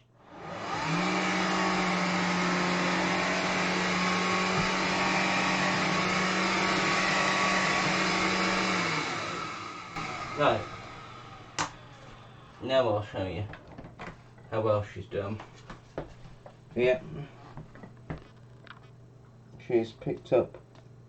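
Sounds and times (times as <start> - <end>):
floor cleaner motor whining: 0.0 - 14.2.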